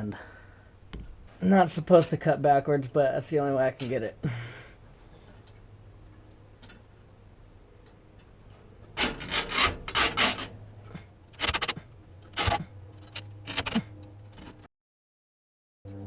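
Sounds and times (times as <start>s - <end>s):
rasping cutting strokes: 9.0s - 10.5s, 11.4s - 13.9s.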